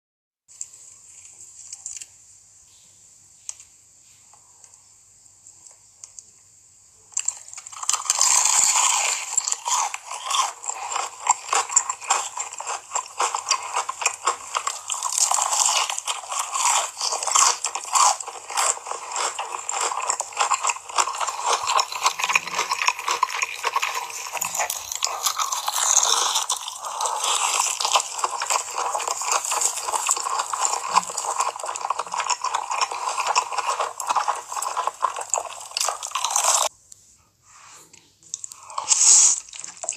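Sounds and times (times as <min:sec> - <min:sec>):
small clicks and crackles: 0:00.5 - 0:02.2
person biting and chewing food: 0:07.1 - 0:36.7, 0:38.3 - 0:39.9.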